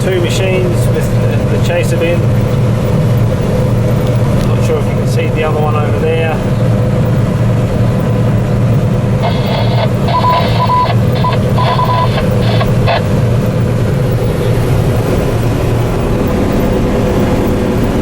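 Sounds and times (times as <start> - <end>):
combine harvester drone: 0.0 - 18.0
short electronic beeps: 9.2 - 13.1.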